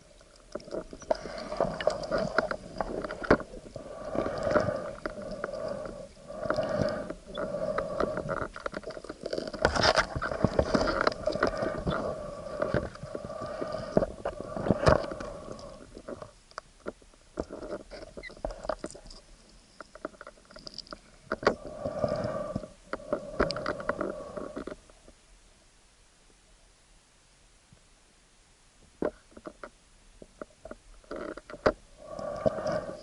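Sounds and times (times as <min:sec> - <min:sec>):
muffled underwater rumble: 0:00.0 - 0:19.1.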